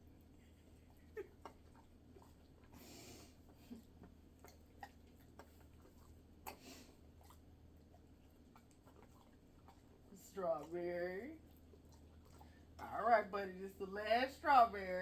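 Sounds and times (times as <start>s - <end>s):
dog chewing with clicks: 3.8s - 10.8s, 11.4s - 12.9s.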